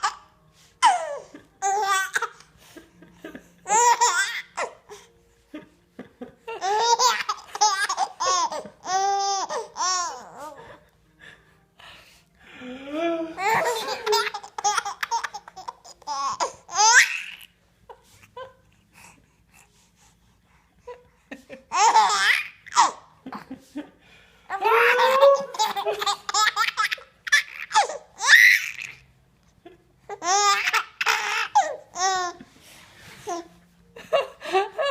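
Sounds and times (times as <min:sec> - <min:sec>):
baby laughing: 0:00.0 - 0:02.5, 0:03.6 - 0:04.9, 0:06.5 - 0:10.7, 0:13.4 - 0:17.5, 0:21.6 - 0:23.5, 0:24.5 - 0:29.0, 0:30.1 - 0:32.5.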